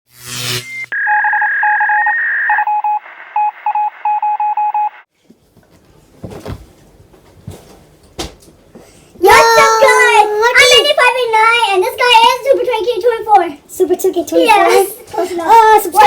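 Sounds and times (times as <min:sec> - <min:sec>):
short repeated beeps: 0:00.6 - 0:05.0
steady high telephone tone: 0:00.9 - 0:05.1.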